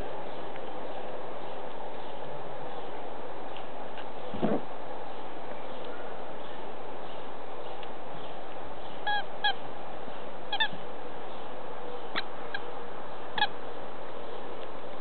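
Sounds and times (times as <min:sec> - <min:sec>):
steady background hiss: 0:00.0 - 0:15.0
high-pitched animal calls: 0:09.0 - 0:09.6, 0:10.5 - 0:10.8.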